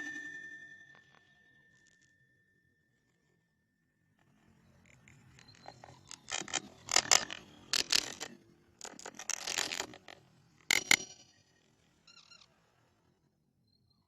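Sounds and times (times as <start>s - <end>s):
mechanical clicking and rattling: 4.9s - 11.2s
sharp clicks: 4.9s - 11.2s.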